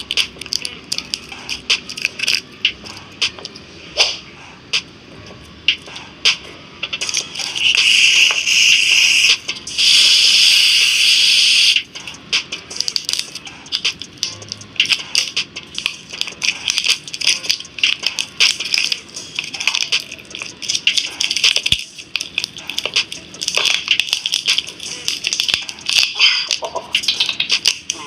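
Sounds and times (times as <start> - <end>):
dense crunching and crackling clicks: 0.0 - 2.5.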